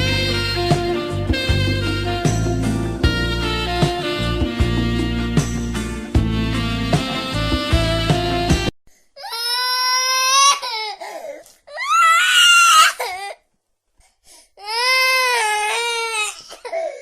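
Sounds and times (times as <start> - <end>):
baby crying: 9.2 - 13.4, 14.6 - 17.0.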